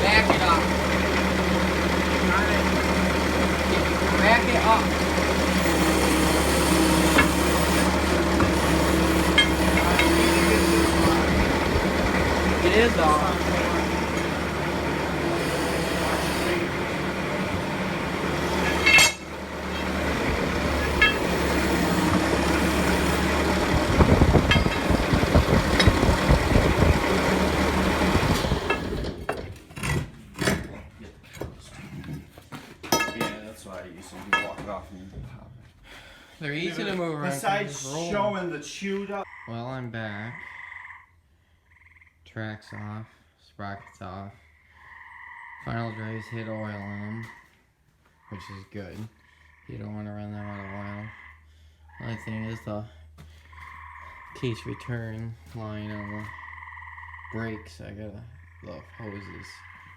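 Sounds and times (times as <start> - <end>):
mid-pitched whine: 0.0 - 29.1
diesel engine running: 0.0 - 29.7
machine knocks and clanks: 4.9 - 30.7.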